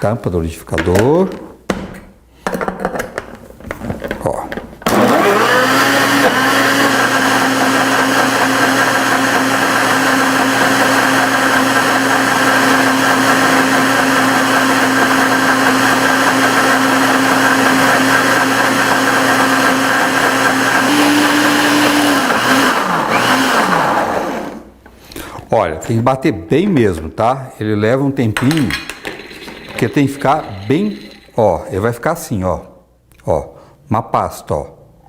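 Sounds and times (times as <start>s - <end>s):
blender motor running: 4.8s - 24.8s.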